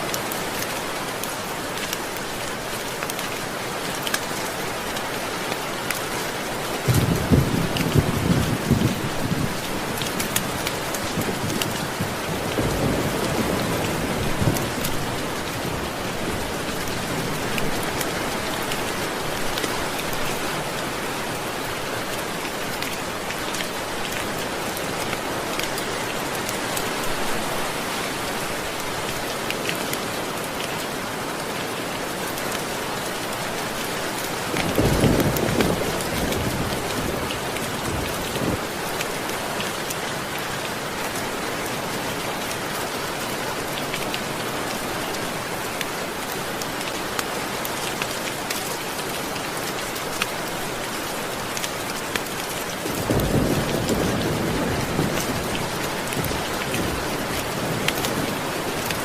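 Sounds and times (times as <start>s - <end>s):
steady rain falling: 0.0s - 59.0s
low rolls of thunder: 6.9s - 9.6s.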